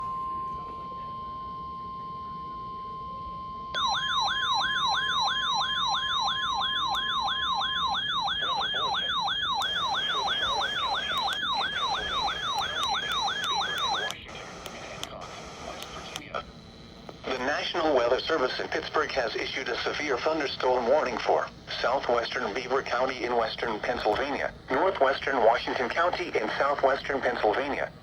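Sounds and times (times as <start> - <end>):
warbling electronic siren: 3.7 - 14.2.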